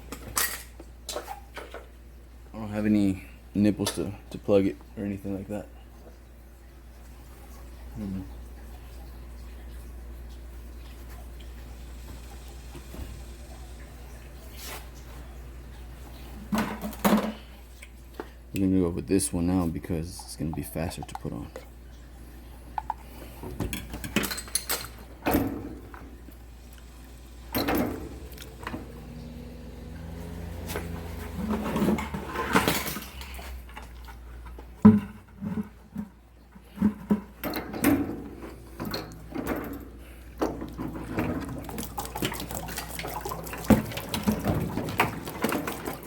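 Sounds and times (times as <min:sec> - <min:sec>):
water running and splashing: 0:40.4 - 0:46.0.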